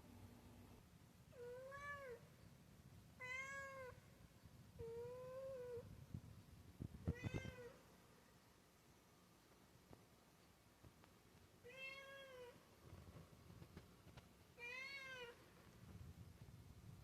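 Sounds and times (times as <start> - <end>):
cat meowing: 3.2 - 4.0, 7.0 - 7.8.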